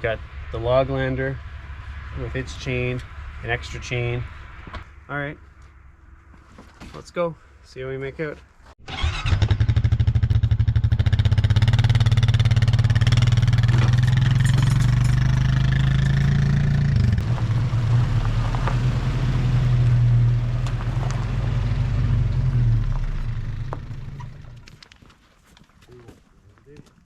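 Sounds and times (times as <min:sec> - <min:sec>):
atv engine running: 0:08.9 - 0:24.8.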